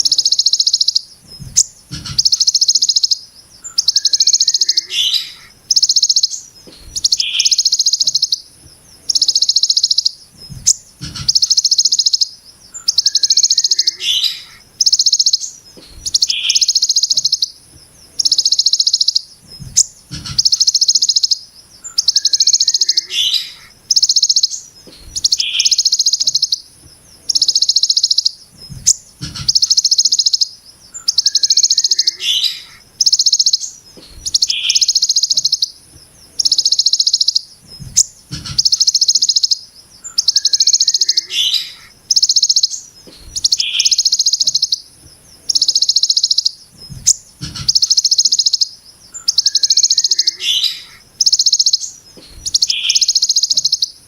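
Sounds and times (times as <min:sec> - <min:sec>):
bird harsh rapid call: 0:00.0 - 0:08.4, 0:09.1 - 0:17.4, 0:18.2 - 0:26.6, 0:27.3 - 0:35.6, 0:38.0 - 0:44.8, 0:47.1 - 0:53.8
faint high hiss: 0:00.0 - 0:54.0
low thumps: 0:01.2 - 0:02.3, 0:10.4 - 0:11.5, 0:19.4 - 0:20.5, 0:28.6 - 0:29.6, 0:37.6 - 0:38.7, 0:46.8 - 0:47.8.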